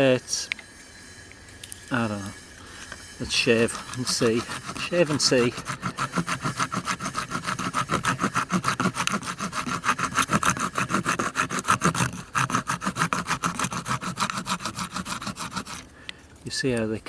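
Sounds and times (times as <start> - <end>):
metal rasp scraping wood: 3.2 - 15.9.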